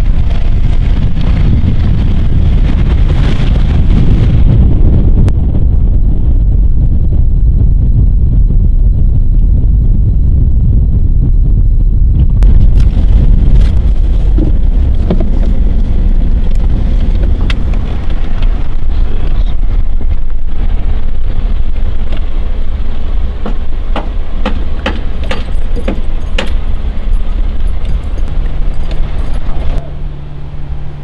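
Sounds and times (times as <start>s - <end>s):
truck rumbling on rough road: 0.0s - 31.0s
rattles and knocks: 12.4s - 29.9s.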